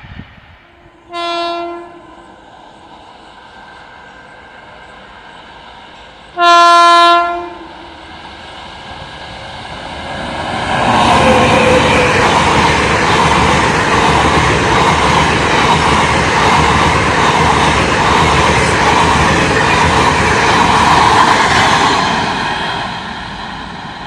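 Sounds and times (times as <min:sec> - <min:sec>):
rumble of approaching train: 0:00.0 - 0:24.0
locomotive horn blasts: 0:01.0 - 0:02.2, 0:06.4 - 0:07.9.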